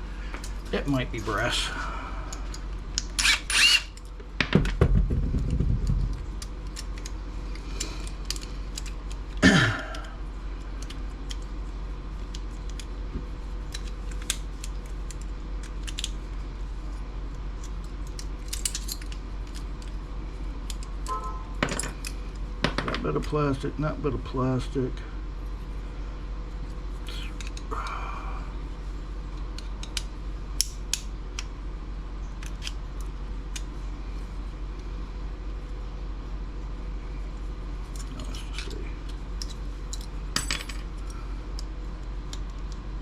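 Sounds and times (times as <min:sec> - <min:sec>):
small parts clicking and clattering: 0:05.4 - 0:11.6, 0:13.6 - 0:17.0, 0:17.6 - 0:20.0, 0:20.6 - 0:23.4, 0:27.1 - 0:27.7, 0:37.8 - 0:42.8.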